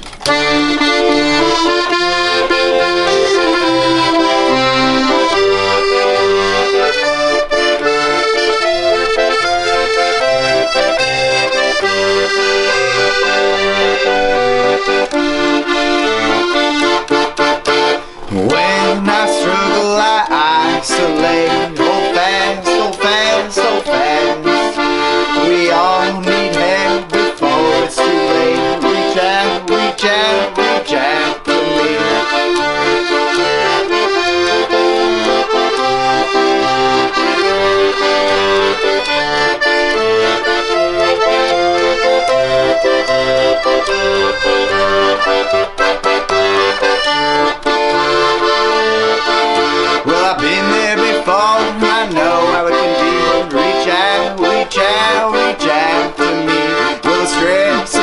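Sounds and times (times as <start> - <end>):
instrumental folk-punk music: 0.0 - 58.0.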